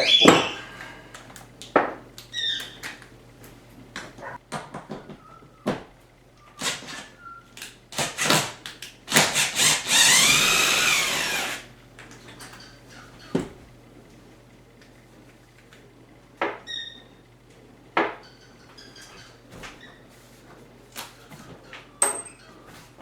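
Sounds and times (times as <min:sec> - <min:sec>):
power driver running: 0:08.0 - 0:12.0.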